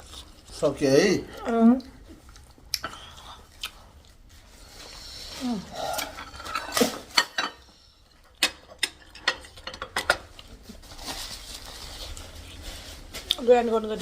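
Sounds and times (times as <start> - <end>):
cutlery clinking against dishes: 6.0 - 7.6, 8.4 - 10.3.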